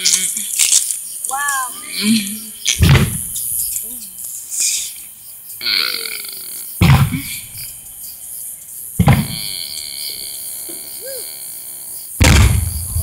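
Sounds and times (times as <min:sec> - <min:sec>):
firework shells booming: 0:02.7 - 0:03.4, 0:06.8 - 0:07.4, 0:09.0 - 0:09.6, 0:12.2 - 0:13.0.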